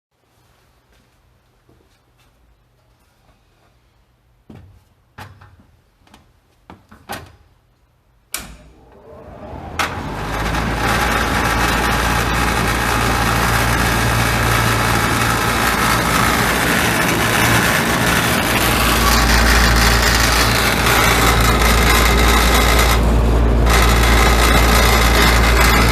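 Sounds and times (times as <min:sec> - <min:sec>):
ventilation fan rush of air: 0:08.3 - 0:25.9
low motor hum: 0:08.4 - 0:25.9.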